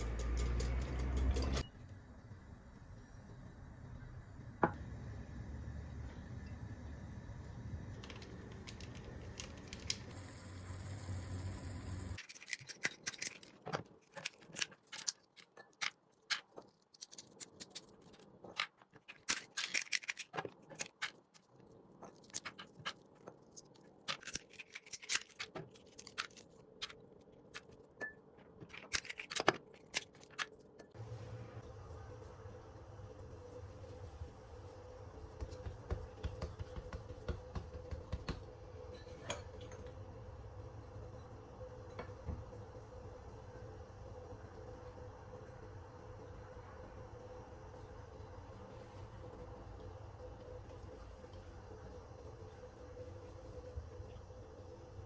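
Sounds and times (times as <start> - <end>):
utensils clicking and scraping bowl: 0.0 - 1.7
steady low hum: 0.0 - 12.2.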